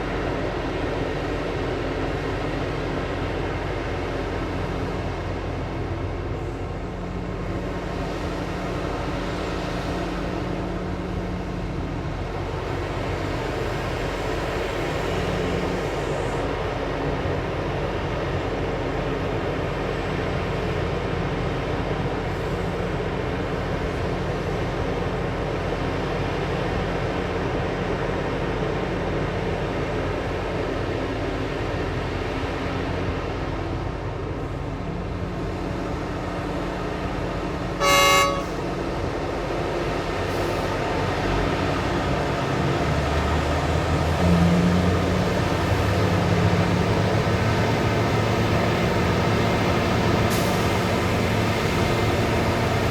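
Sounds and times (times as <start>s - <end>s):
diesel engines running: 0.0s - 52.9s
loud horn blast: 37.8s - 38.8s.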